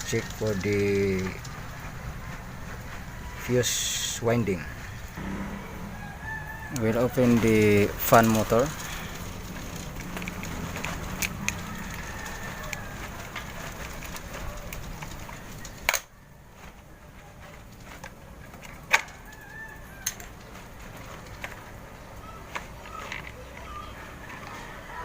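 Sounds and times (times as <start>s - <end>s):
clicks of plastic parts handled: 7.3s - 16.8s.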